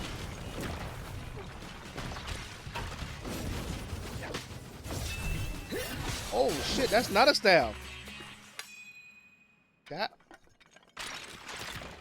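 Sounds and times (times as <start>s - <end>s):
high ringing tone: 8.6s - 9.8s.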